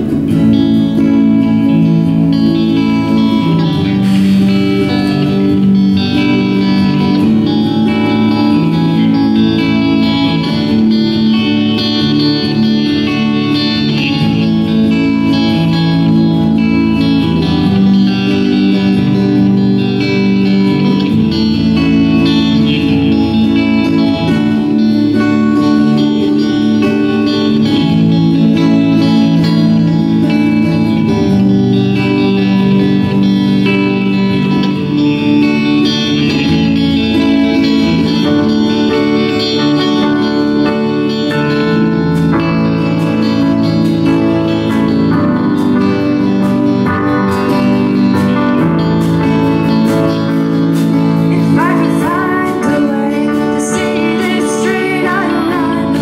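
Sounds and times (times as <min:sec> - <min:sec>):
band playing live with guitars: 0:00.0 - 0:56.0.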